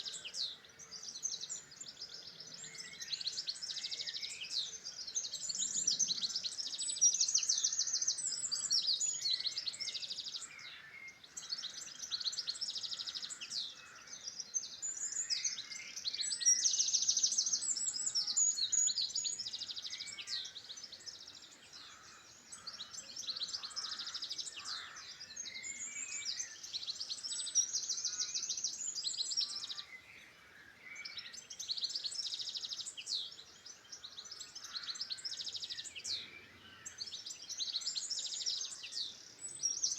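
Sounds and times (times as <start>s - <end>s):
songbirds singing trills: 0.0s - 39.9s
faint bird calls: 19.5s - 28.8s.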